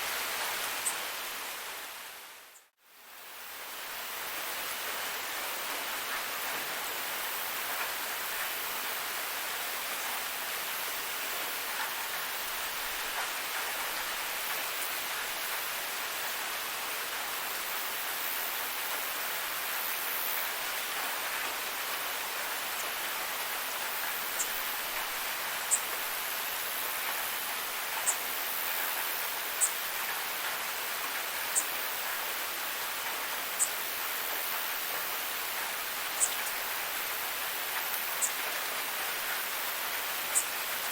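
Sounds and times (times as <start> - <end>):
steady rain falling: 0.0 - 40.9
insect chirping: 22.4 - 26.8, 27.5 - 29.9, 31.3 - 32.8, 33.4 - 34.0, 35.4 - 40.9.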